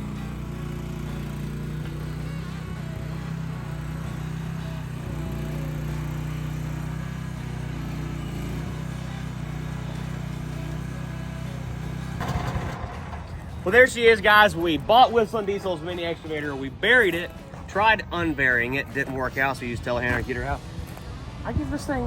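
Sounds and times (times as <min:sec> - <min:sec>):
engine idling: 0:00.0 - 0:14.7.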